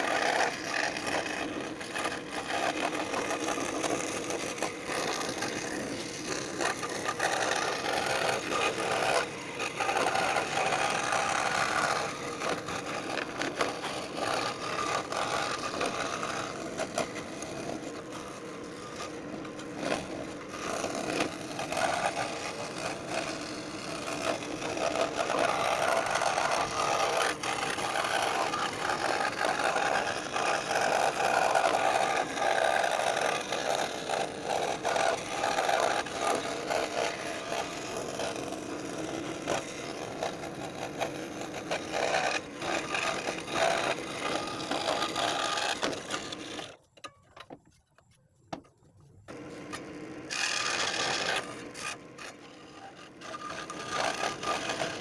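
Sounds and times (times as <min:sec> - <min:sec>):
scroll saw cutting wood: 0:00.0 - 0:47.9, 0:48.5 - 0:55.0.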